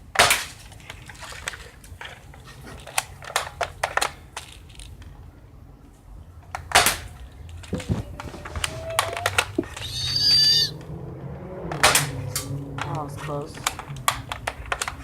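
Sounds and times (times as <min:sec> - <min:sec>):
airsoft rifle shots: 0:00.1 - 0:00.7, 0:06.7 - 0:07.2.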